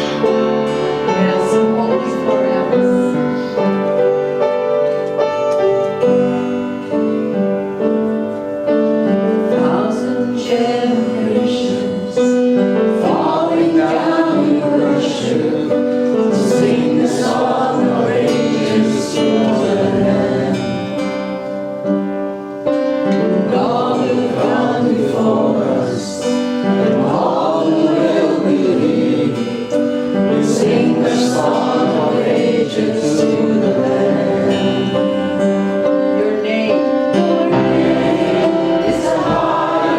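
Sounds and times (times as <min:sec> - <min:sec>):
sustained keyboard chords: 0:00.0 - 0:39.9
group singing worship song: 0:09.0 - 0:21.7, 0:22.8 - 0:39.9.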